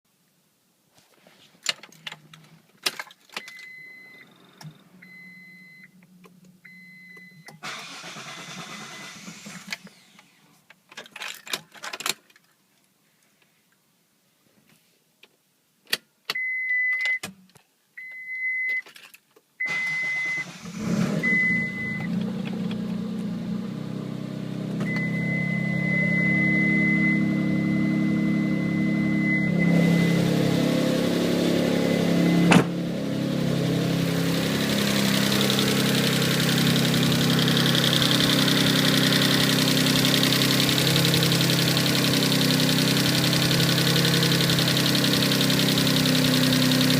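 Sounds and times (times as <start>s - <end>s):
car engine idling: 20.4s - 46.9s
dashboard warning chime: 21.2s - 22.1s, 24.8s - 30.3s.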